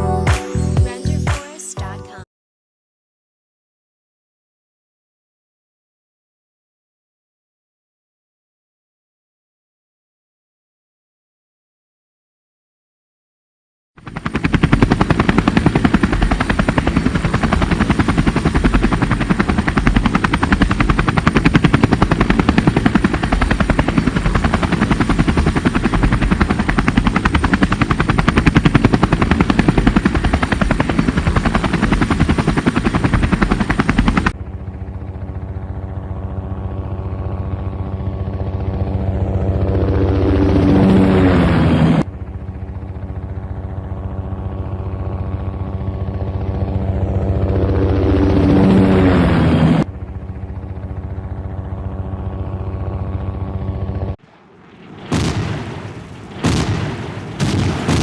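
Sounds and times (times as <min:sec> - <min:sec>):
sweeping tone: 0:00.0 - 0:01.8
helicopter rotor chop: 0:14.0 - 0:58.0.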